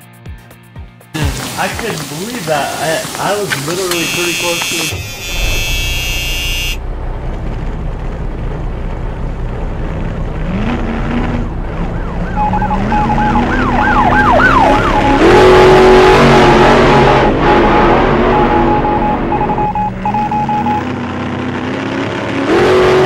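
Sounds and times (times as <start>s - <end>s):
broken beeping tone: 3.9s - 6.8s, 12.3s - 15.2s, 18.2s - 20.9s
siren-like wail: 3.9s - 6.8s, 11.4s - 20.9s.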